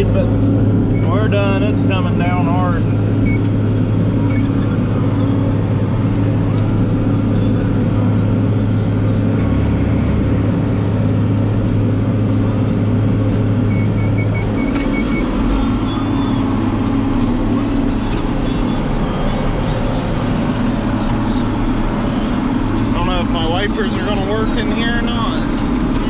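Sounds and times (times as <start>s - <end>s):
tractor engine running: 0.0s - 26.0s
short electronic beeps: 13.7s - 16.6s.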